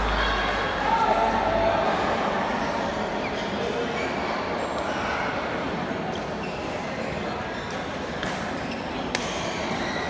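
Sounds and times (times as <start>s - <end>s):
hum of voices: 0.0s - 3.2s.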